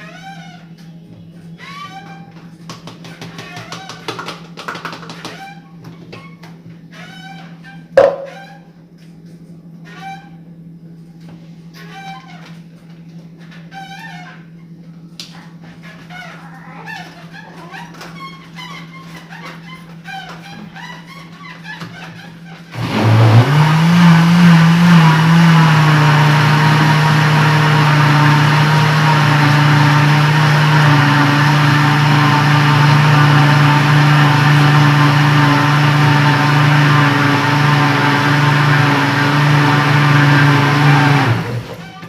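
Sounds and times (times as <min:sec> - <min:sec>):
kitchen blender motor running: 0:22.7 - 0:41.9.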